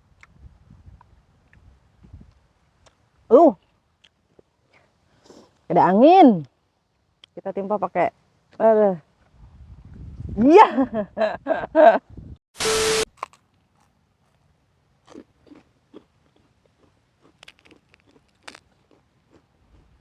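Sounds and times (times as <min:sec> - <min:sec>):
loud burst of noise: 0:12.6 - 0:13.1
crunching and chewing food: 0:13.1 - 0:20.0.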